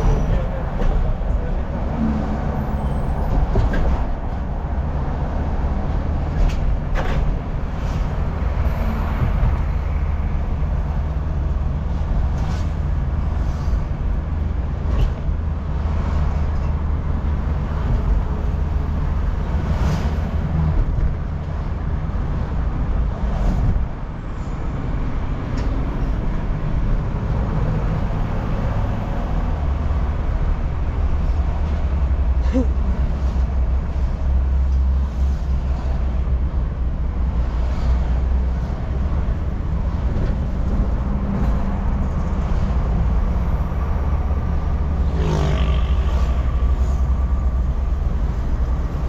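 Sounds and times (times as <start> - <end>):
car engine and tyre rumble: 0.0 - 49.0.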